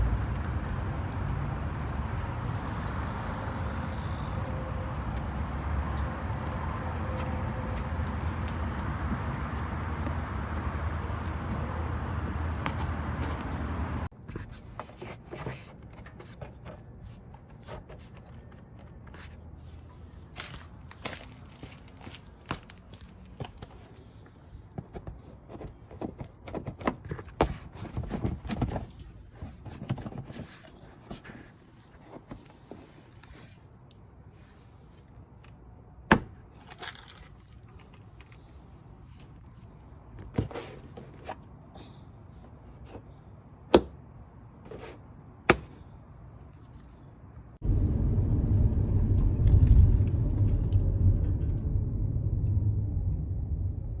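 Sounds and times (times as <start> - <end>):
insect chirring trill: 14.1 - 26.4, 28.8 - 47.6
low rumble: 47.6 - 54.0.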